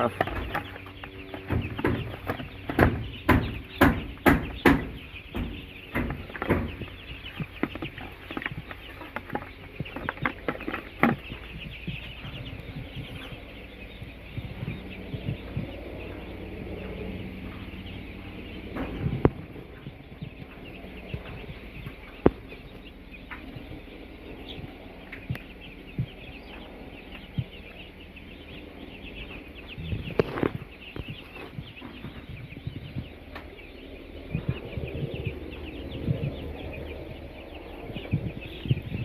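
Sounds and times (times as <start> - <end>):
sharp knocks: 0.0 - 12.4
baby chicks cheeping: 0.0 - 39.0.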